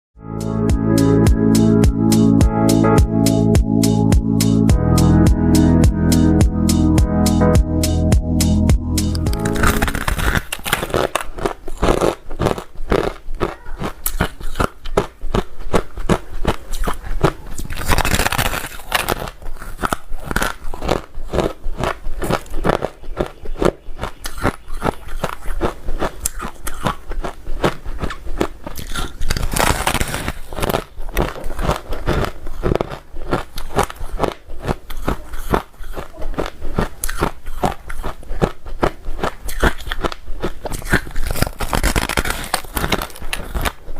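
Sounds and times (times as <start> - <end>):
person crunching ice: 9.2 - 43.9.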